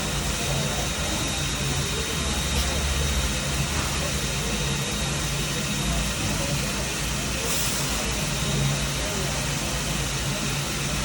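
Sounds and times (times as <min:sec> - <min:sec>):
pump mechanical hum: 0:00.0 - 0:11.0
steam hiss: 0:07.4 - 0:08.4.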